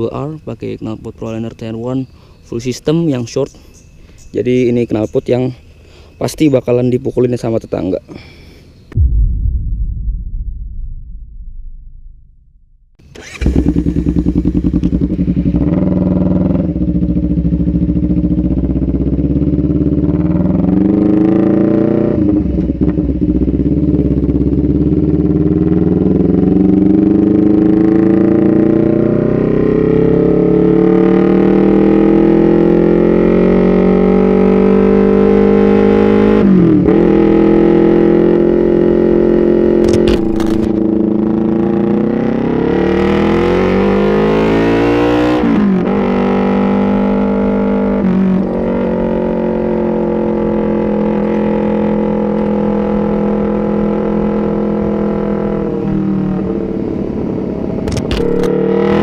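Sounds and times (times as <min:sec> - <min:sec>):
motorcycle engine running: 0:13.1 - 0:43.6, 0:45.8 - 0:59.0.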